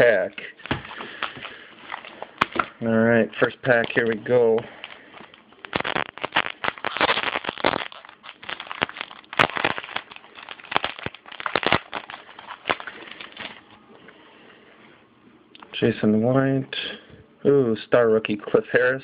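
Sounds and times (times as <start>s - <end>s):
foil wrapper tearing and crinkling: 3.4s - 13.6s.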